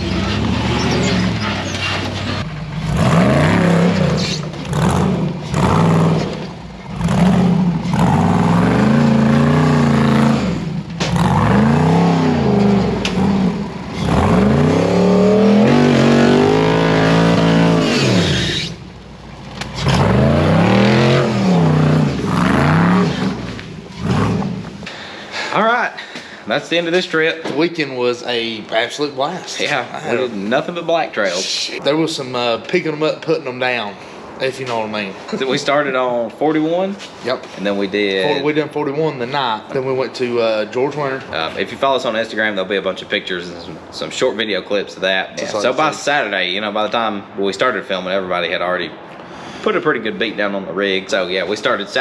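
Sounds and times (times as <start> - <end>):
engine revving: 0.0 - 24.9.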